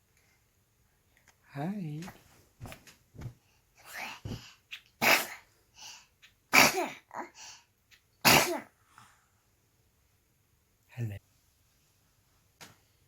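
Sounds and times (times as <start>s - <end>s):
baby sneezing: 4.7s - 5.5s, 6.5s - 7.4s, 8.2s - 8.8s.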